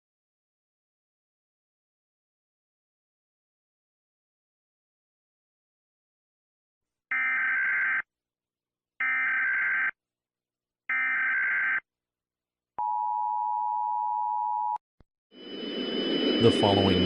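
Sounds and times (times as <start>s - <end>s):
steady attention tone: 15.4s - 17.0s.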